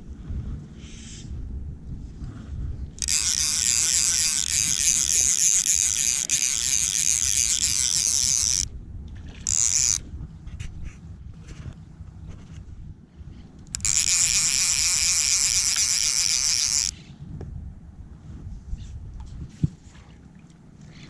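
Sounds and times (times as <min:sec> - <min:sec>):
fly reel drag buzzing: 0:03.0 - 0:08.7, 0:09.4 - 0:10.0, 0:13.7 - 0:17.0.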